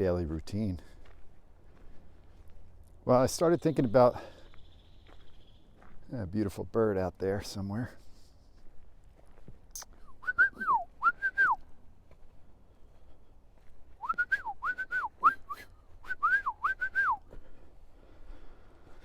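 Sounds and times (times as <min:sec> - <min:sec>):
bird-like whistled notes: 0:09.8 - 0:11.6.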